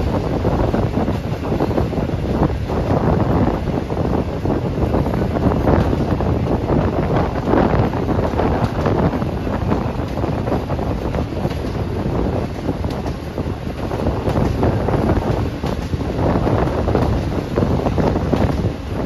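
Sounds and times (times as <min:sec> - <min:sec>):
train running rumble: 0:00.0 - 0:19.0
wind buffeting microphone: 0:00.0 - 0:19.0.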